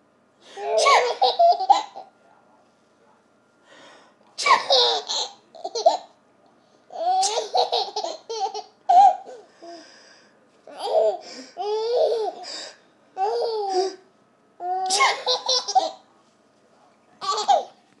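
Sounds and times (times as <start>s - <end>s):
baby laughing: 0.6s - 2.1s, 4.5s - 6.1s, 6.9s - 9.4s, 10.7s - 12.4s, 13.2s - 14.0s, 14.6s - 16.0s, 17.2s - 17.8s.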